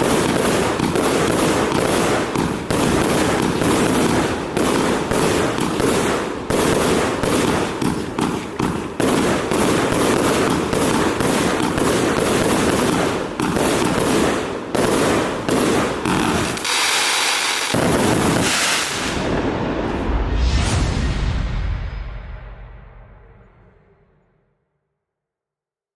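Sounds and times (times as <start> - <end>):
firework firing rapid shots: 0.0 - 19.5
firework hissing: 0.0 - 20.4
firework crackling: 0.0 - 21.1.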